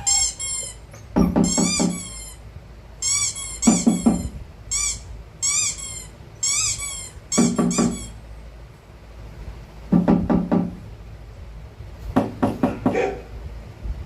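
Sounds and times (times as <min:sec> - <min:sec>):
dog whimpering: 0:00.0 - 0:02.4.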